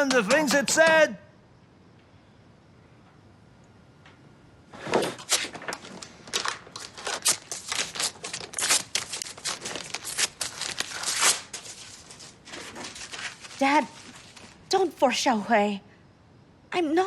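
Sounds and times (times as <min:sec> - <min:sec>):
paper crumpling by hand: 0:05.2 - 0:14.7.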